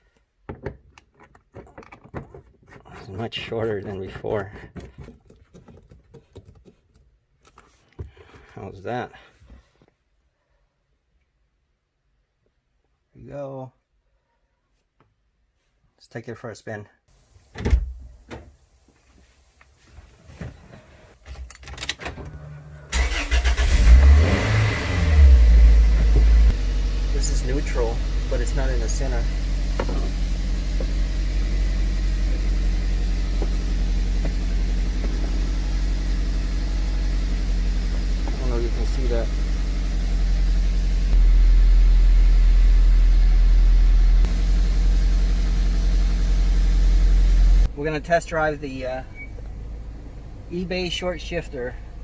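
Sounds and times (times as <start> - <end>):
car engine starting and running: 21.8 - 52.0.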